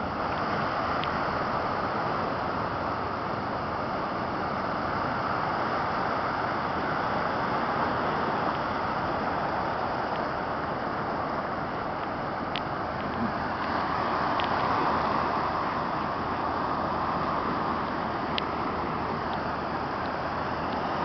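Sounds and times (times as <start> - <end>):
ocean surf: 0.0 - 21.0.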